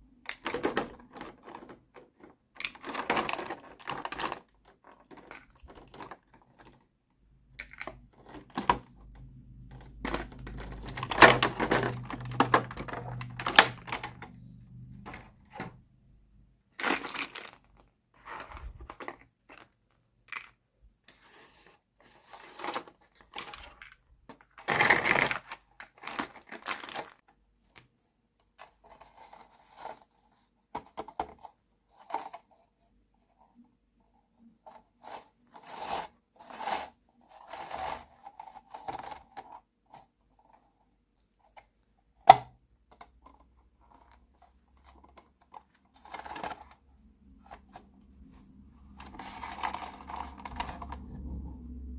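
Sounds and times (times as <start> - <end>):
packaging crinkling: 16.8 - 19.7, 24.7 - 27.2, 48.9 - 51.3
low hum: 47.2 - 51.9.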